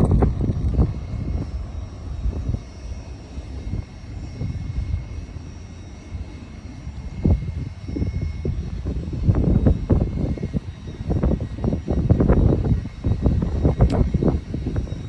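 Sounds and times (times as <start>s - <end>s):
faint high whine: 0.0s - 15.0s.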